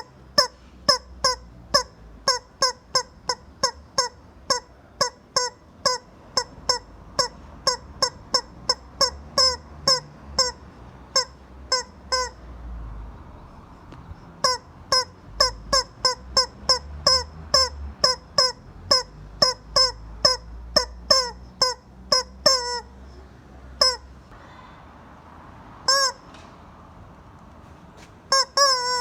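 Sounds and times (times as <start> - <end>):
rubber chicken toy squeaking: 0.0 - 12.5, 14.3 - 23.2, 23.8 - 24.2, 25.9 - 26.3, 28.3 - 29.0.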